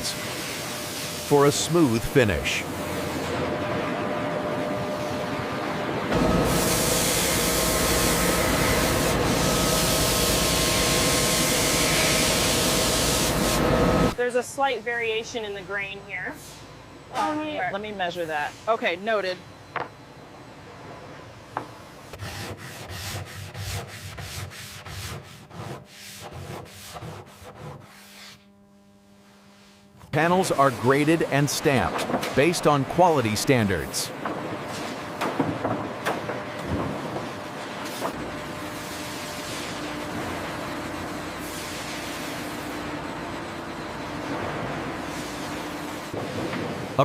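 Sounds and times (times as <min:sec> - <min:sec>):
sanding machine hiss on wood: 0:00.0 - 0:03.2, 0:06.4 - 0:14.1, 0:22.2 - 0:28.5
faint machine hum: 0:00.0 - 0:47.0
sandpaper rubbing on wood: 0:22.2 - 0:28.5.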